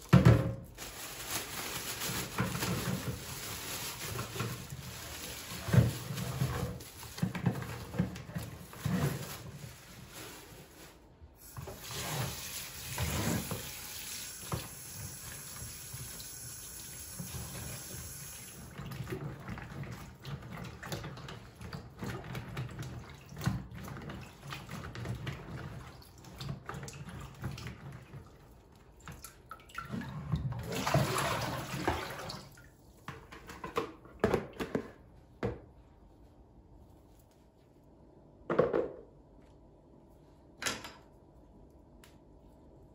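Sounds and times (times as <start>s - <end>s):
tap water running into sink: 11.5s - 25.8s.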